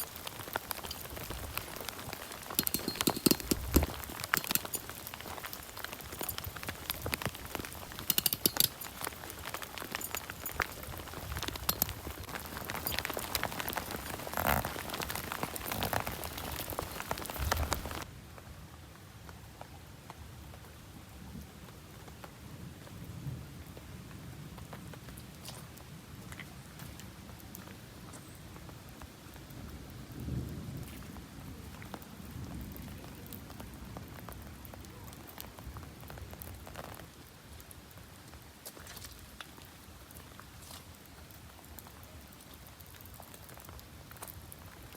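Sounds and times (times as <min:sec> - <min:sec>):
rain hiss: 0:00.0 - 0:18.1
rain drops hitting close by: 0:00.0 - 0:44.9.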